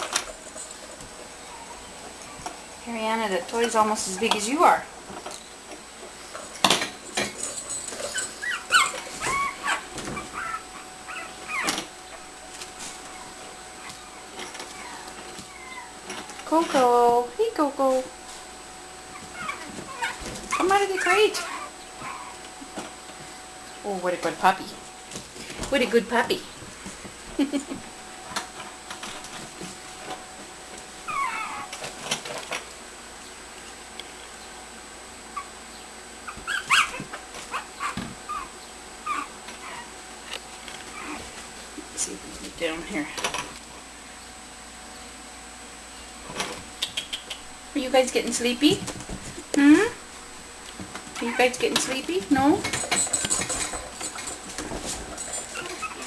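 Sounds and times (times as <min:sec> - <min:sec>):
puppies whimpering and yipping: 0:01.4 - 0:02.5, 0:08.0 - 0:12.3, 0:13.0 - 0:16.4, 0:19.1 - 0:22.4, 0:31.1 - 0:31.8, 0:36.2 - 0:40.0, 0:40.8 - 0:41.4, 0:55.1 - 0:56.0.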